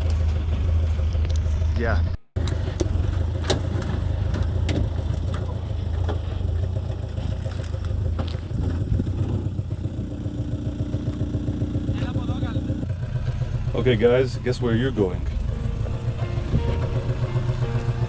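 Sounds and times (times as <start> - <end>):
vehicle engine droning: 0.0 - 18.0
knocks and rattles: 2.4 - 13.3.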